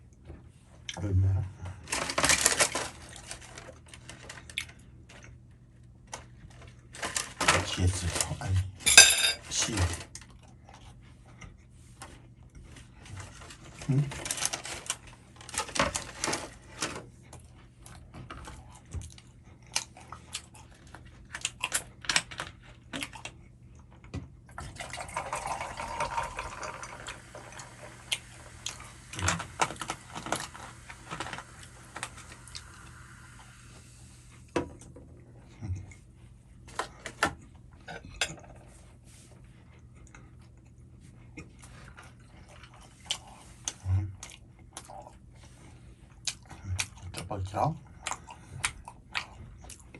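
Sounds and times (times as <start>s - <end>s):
utensils clinking on a dish: 8.8s - 9.6s
eating sounds: 39.6s - 49.9s.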